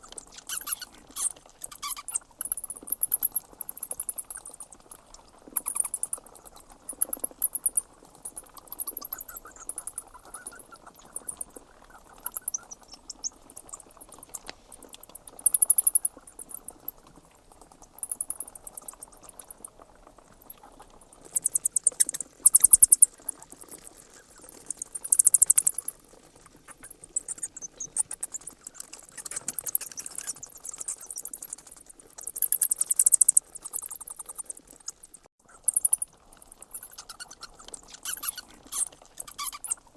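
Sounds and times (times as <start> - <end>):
bats squeaking: 0.0 - 17.4, 18.0 - 39.9.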